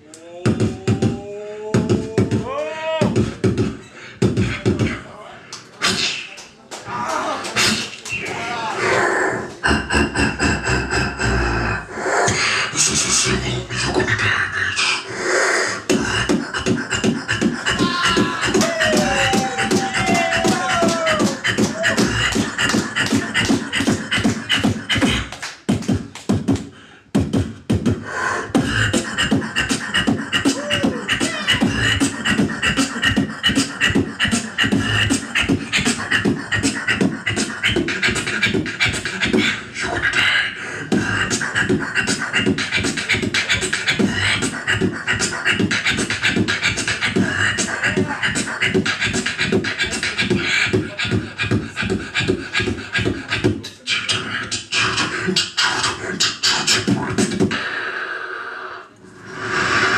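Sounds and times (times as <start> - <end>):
beatboxing: 0.0 - 59.9.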